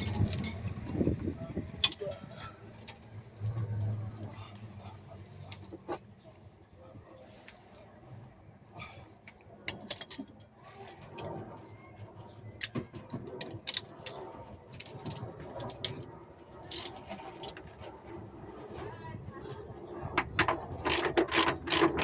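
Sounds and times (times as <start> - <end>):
hand tools clicking and knocking: 20.2 - 22.0.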